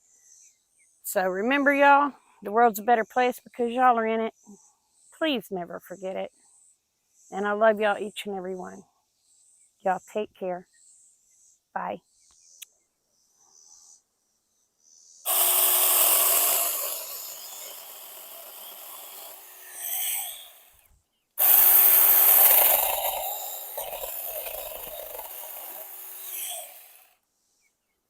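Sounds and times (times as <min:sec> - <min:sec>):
electric chainsaw cutting wood: 0:15.3 - 0:27.2.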